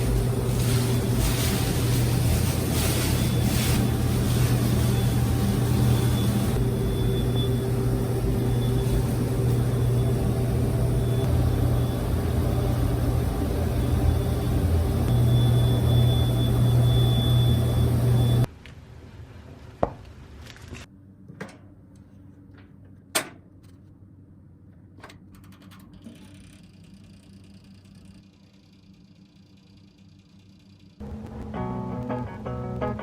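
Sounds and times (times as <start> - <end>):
washing machine running: 0.0 - 18.5, 25.1 - 31.6.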